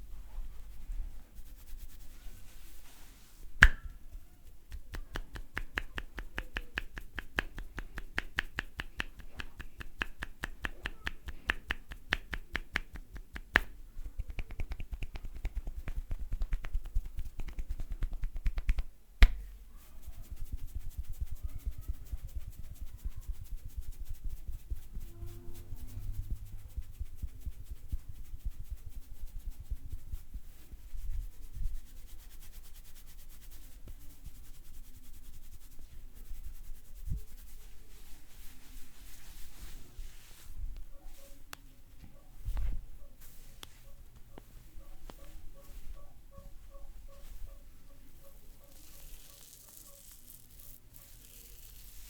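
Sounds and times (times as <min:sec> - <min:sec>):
loud sharp snaps: 0:03.6 - 0:04.1, 0:04.7 - 0:19.5
hands snapping and popping hair: 0:03.6 - 0:19.6, 0:48.8 - 0:52.0.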